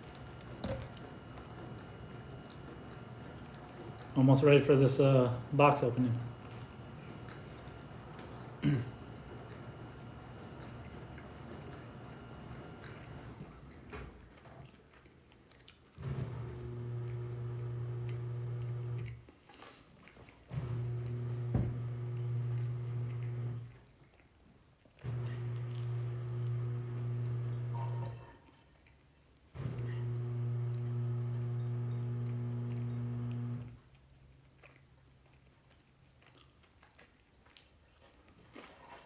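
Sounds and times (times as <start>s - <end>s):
appliance electric hum: 0.0s - 13.9s, 16.0s - 19.2s, 20.5s - 23.8s, 25.0s - 28.4s, 29.5s - 33.9s.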